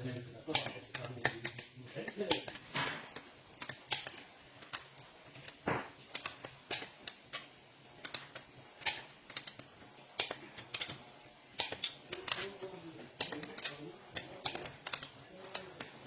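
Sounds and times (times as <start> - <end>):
wrench clicking on bolts: 10.2 - 11.0, 11.6 - 12.4, 13.2 - 16.0.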